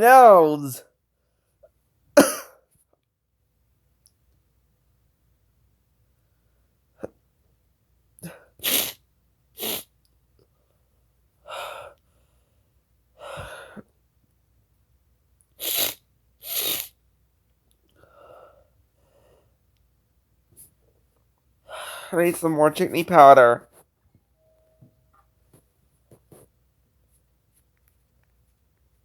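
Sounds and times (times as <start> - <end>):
person sneezing: 2.2 - 2.6, 8.2 - 9.0, 9.6 - 9.8, 15.6 - 16.9.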